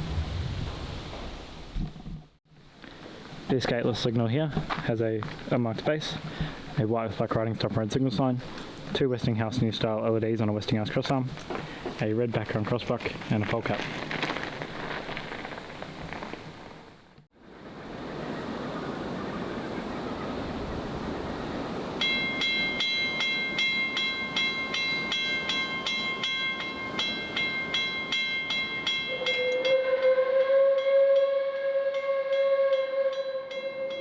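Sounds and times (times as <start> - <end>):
crossing bell ringing: 22.0 - 30.0, 32.3 - 34.0
steam locomotive whistle: 28.8 - 34.0.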